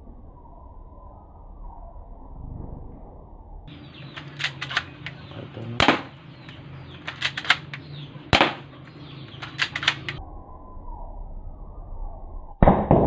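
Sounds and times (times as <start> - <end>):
pistol clicking: 3.7 - 10.2
airsoft pistol firing snaps: 4.1 - 10.2.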